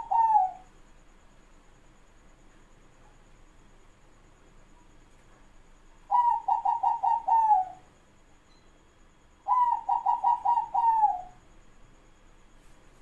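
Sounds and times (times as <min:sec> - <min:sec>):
dove cooing: 0:00.0 - 0:00.7, 0:06.1 - 0:07.9, 0:09.4 - 0:11.4.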